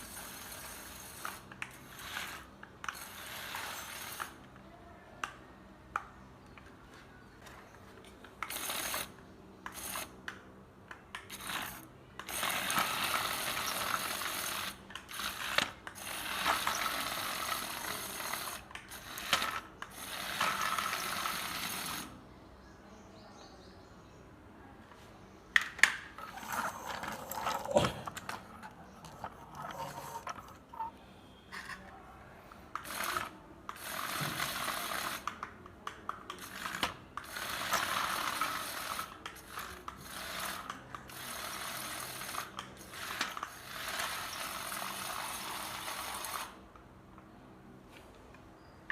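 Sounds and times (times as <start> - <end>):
small electric motors whirring: 0.0 - 4.5, 8.3 - 22.2, 26.2 - 31.0, 32.6 - 46.6.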